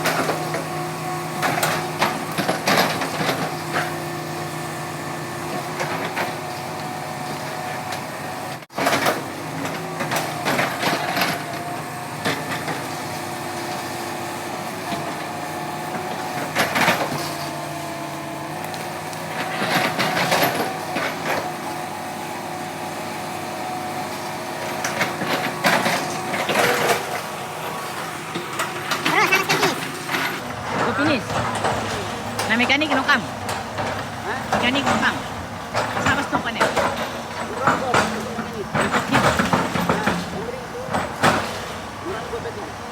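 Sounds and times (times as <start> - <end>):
excavator diesel engine running: 0.0 - 42.9
metal clanking and knocking: 24.7 - 42.3.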